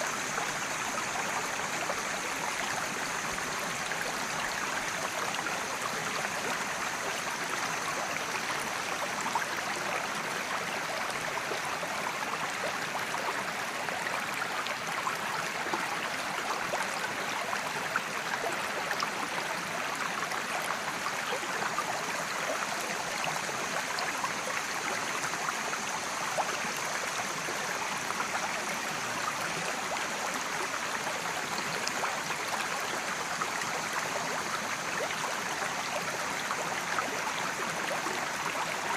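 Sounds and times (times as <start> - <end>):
creek water flowing over rocks: 0.0 - 38.9.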